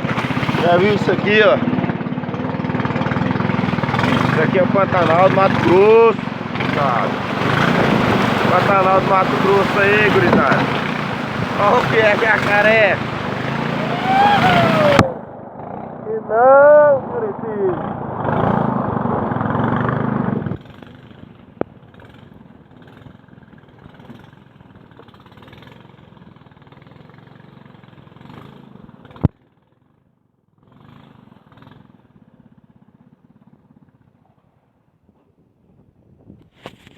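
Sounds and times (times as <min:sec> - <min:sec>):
boat motor running: 0:00.0 - 0:27.2.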